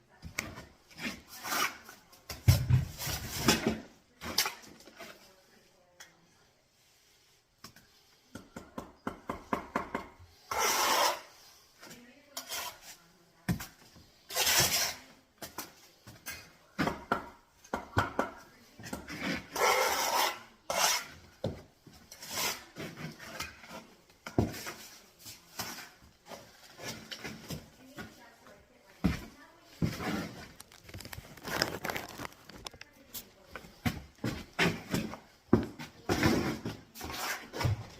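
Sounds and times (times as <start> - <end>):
trowel scraping mortar: 0.9 - 2.0, 10.4 - 11.5, 12.4 - 13.1, 14.1 - 15.2, 18.9 - 21.5, 22.1 - 24.9, 36.1 - 37.8.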